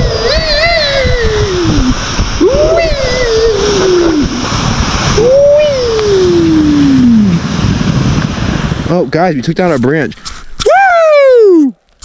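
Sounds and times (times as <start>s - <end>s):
people yelling: 2.4s - 4.4s.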